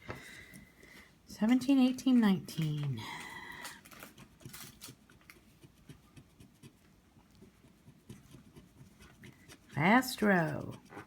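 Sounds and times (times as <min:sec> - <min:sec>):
coin scratching a lottery ticket: 0:08.1 - 0:11.0.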